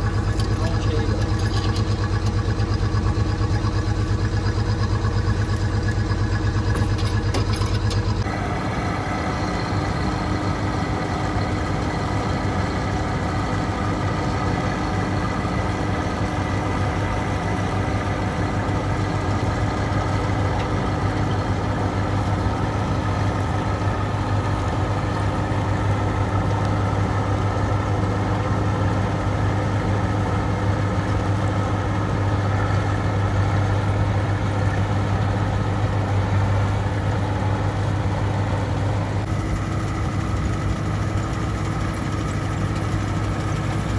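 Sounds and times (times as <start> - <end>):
heavy engine running: 0.0 - 43.9.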